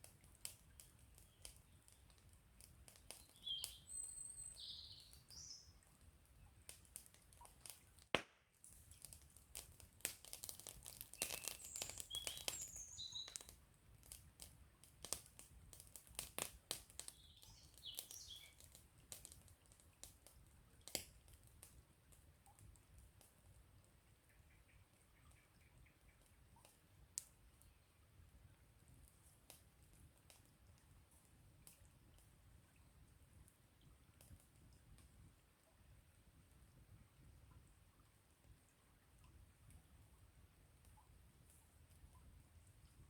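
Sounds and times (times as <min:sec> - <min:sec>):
campfire crackling: 0:00.0 - 0:23.6, 0:26.2 - 0:27.8, 0:28.4 - 0:35.3
small birds chirping: 0:00.6 - 0:02.3, 0:02.9 - 0:06.0, 0:10.9 - 0:13.5, 0:17.0 - 0:18.8
sharp pop from fire: 0:08.1 - 0:13.5.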